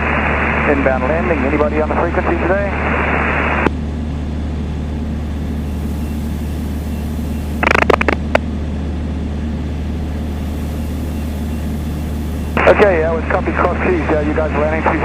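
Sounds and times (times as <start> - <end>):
radio noise burst: 5.8 - 8.4, 12.4 - 15.0
sharp radio clicks: 7.6 - 8.4.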